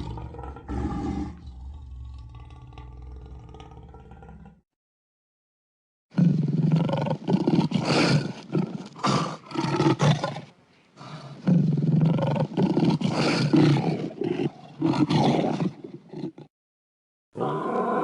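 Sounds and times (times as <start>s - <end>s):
monster roars: 0.0s - 4.6s, 17.4s - 18.0s.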